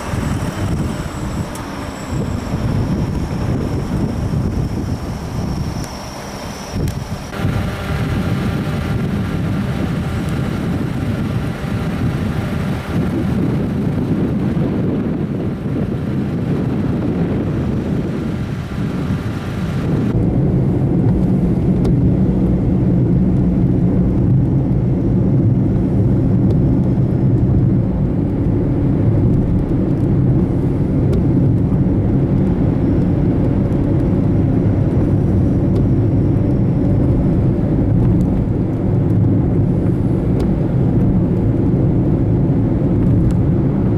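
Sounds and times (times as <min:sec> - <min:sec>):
car engine and road noise: 0:00.0 - 0:43.9.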